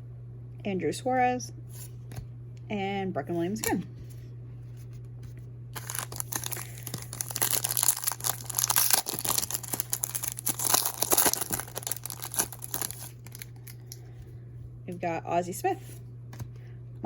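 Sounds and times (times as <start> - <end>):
plastic wrapper tearing and crumpling: 5.8 - 14.0.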